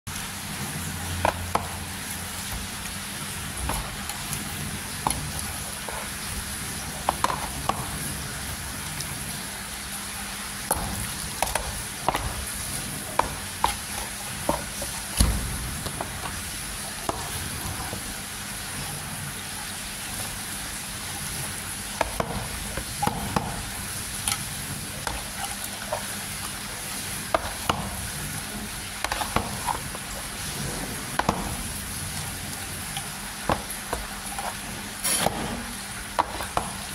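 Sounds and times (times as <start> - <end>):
chicken sizzling in hot oil: 0.1 - 36.9
utensil clacking against pan: 7.0 - 7.9, 10.7 - 16.4, 22.0 - 26.5, 27.3 - 28.0, 29.0 - 30.2, 31.2 - 31.7, 32.9 - 36.9.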